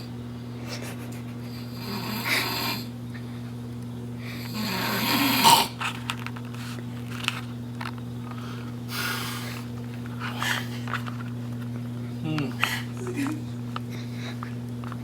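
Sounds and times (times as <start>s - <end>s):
man snoring: 1.6s - 2.9s, 4.4s - 5.8s.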